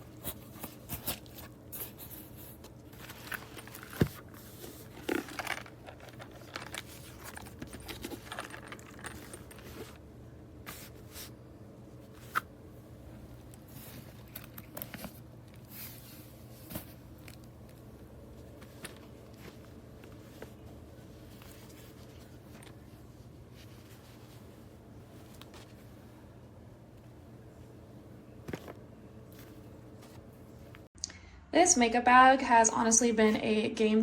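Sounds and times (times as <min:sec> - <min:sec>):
faint low hum: 0:00.0 - 0:34.0
small objects clicking and rustling: 0:04.9 - 0:09.9.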